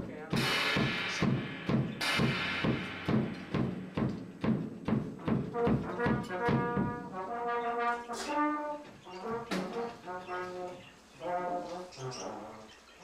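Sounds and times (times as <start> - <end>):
sharp drum hits: 0.4 - 7.1
horn-like instrument notes: 5.2 - 12.8.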